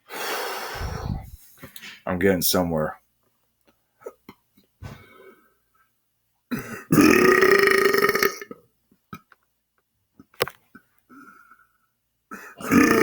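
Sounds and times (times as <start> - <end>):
man belching: 6.5 - 8.6, 12.5 - 13.0.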